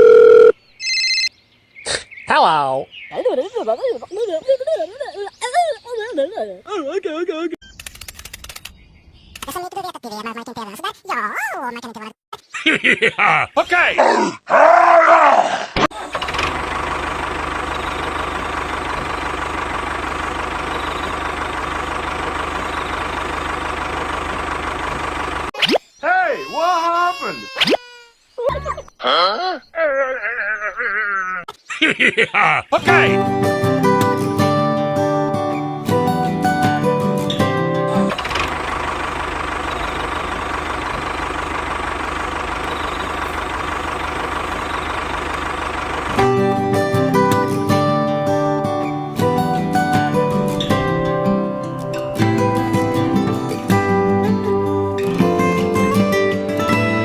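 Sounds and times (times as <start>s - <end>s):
tractor engine idling: 16.0s - 25.5s, 36.1s - 57.0s
motor running steadily: 16.1s - 25.5s, 38.2s - 46.6s.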